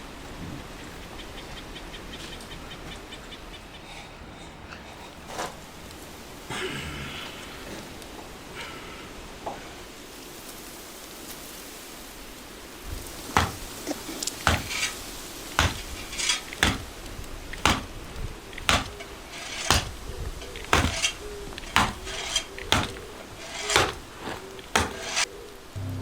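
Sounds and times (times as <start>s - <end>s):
hard objects clinking: 13.2s - 25.3s.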